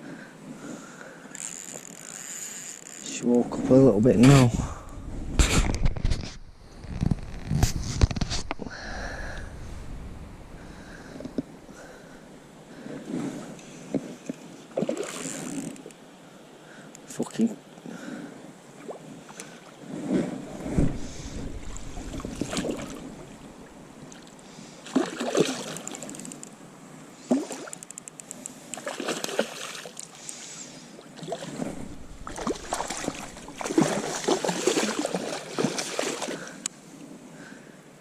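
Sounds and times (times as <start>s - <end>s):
microphone handling noise: 4.2s - 8.7s, 20.2s - 23.7s, 31.5s - 34.4s
water splashing and sloshing: 10.6s - 16.0s, 18.7s - 26.6s, 27.2s - 36.7s.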